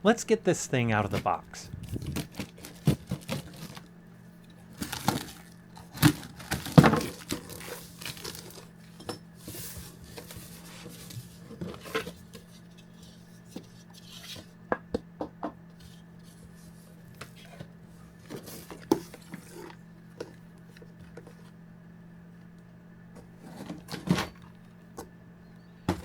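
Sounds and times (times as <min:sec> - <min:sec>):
packaging crinkling and tearing: 0:01.9 - 0:03.9, 0:04.7 - 0:08.7.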